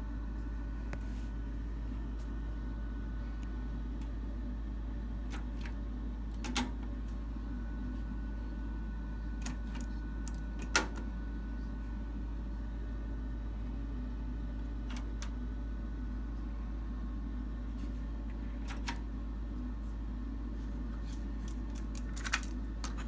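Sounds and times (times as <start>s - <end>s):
steady low hum: 0.0s - 23.0s
cassette deck mechanical clicks: 5.3s - 7.0s, 9.4s - 11.1s, 14.9s - 15.4s, 18.6s - 19.0s.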